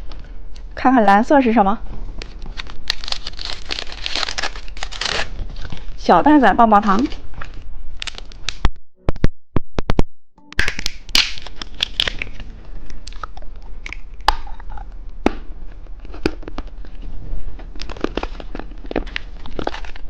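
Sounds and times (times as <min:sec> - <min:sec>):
plastic wrapper crinkling and tearing: 0:02.1 - 0:06.0, 0:07.0 - 0:08.6, 0:10.6 - 0:14.9, 0:15.8 - 0:20.0
plastic packaging clicks and snaps: 0:02.2 - 0:05.8, 0:08.0 - 0:08.7, 0:10.6 - 0:14.6, 0:17.8 - 0:20.0.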